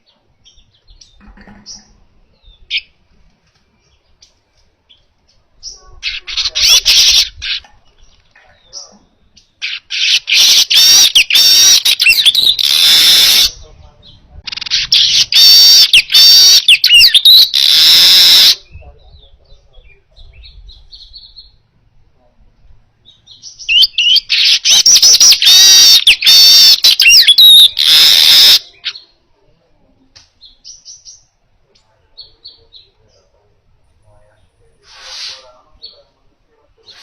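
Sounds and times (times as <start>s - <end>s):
bird chattering song with trills: 3.7s - 21.6s, 23.0s - 29.2s.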